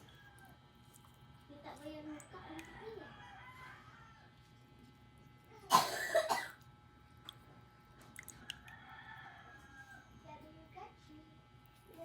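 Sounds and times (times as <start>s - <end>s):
person coughing: 5.7s - 6.6s.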